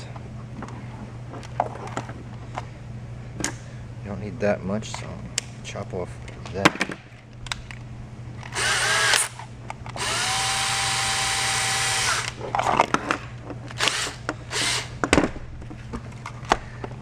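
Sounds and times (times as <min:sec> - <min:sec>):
handheld power tool motor bursts: 0:08.5 - 0:09.4, 0:10.0 - 0:12.4, 0:13.8 - 0:15.0.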